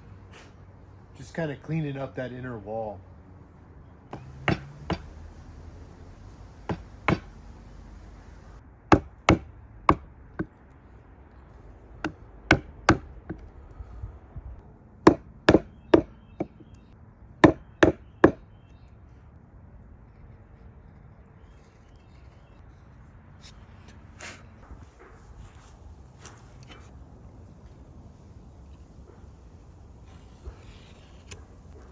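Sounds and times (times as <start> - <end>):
mallet striking chisel into wood: 4.1 - 5.2, 6.6 - 7.4, 8.9 - 10.0, 12.5 - 13.1, 15.1 - 16.5, 17.4 - 18.4.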